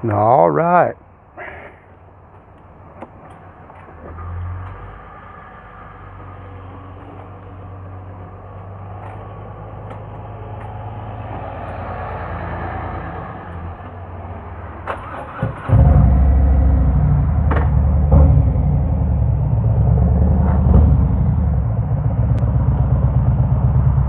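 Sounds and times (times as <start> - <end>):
background rumble: 1.1 - 24.0
motorcycle engine starting and running: 5.7 - 24.0.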